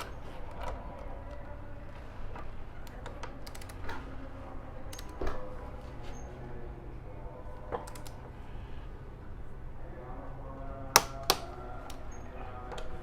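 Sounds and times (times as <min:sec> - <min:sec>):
steady low hum: 0:00.0 - 0:13.0
metallic clicks of hand tools: 0:11.0 - 0:12.0.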